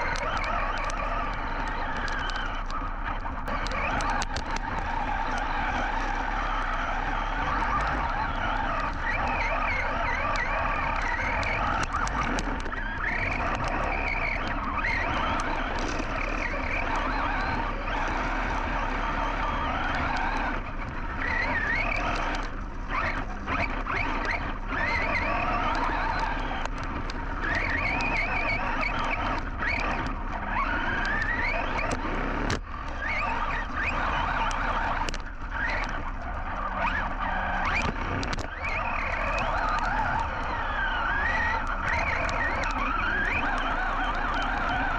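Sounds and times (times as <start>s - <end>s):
drivetrain and tyre noise: 0.0s - 44.9s
rc truck motor whining: 0.0s - 44.9s.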